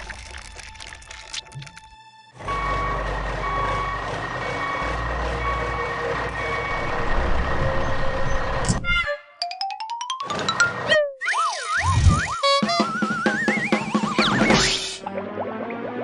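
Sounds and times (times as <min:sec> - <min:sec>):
truck engine running: 0:02.4 - 0:08.7.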